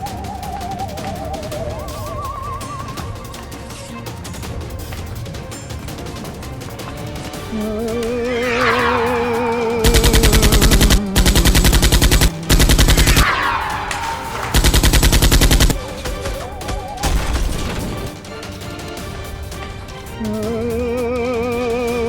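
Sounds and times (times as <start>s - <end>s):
background music: 0.0s - 22.0s
falling whooshes: 7.5s - 18.3s
automatic gunfire bursts: 9.8s - 13.2s, 13.8s - 18.2s.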